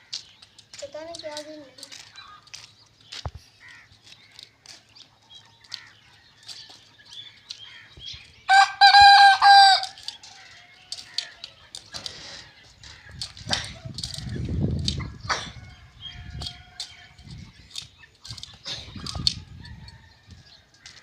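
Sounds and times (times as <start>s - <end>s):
rooster crowing: 8.5s - 10.0s.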